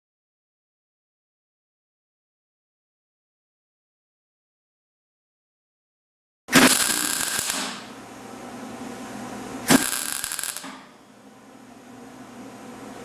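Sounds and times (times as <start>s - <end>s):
welder crackling bursts: 6.5s - 8.0s, 9.6s - 10.9s
low steady welder hum: 6.5s - 13.0s.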